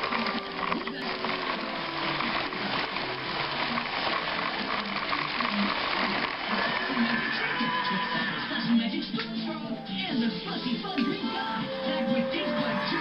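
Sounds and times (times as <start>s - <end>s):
model train rattling on track: 0.0s - 7.2s.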